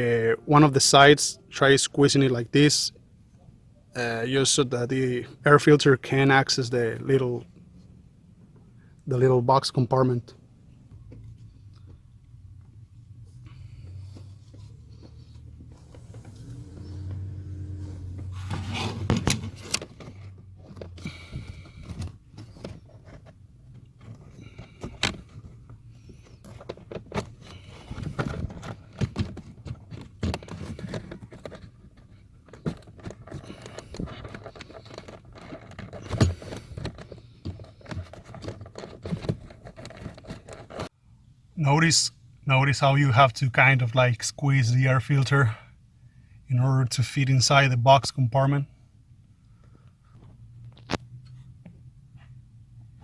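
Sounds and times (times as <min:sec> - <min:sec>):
air filter rustling and scraping: 0:13.1 - 0:40.9.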